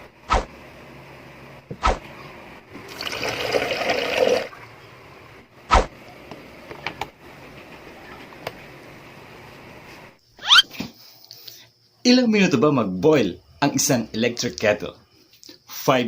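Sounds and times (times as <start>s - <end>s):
water pouring into kettle: 2.8s - 4.8s.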